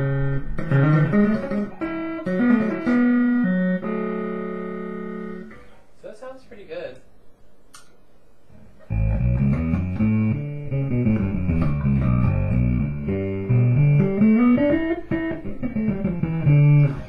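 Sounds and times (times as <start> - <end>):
bit-crushed plucked bass notes: 0.0 - 5.5, 8.9 - 17.0.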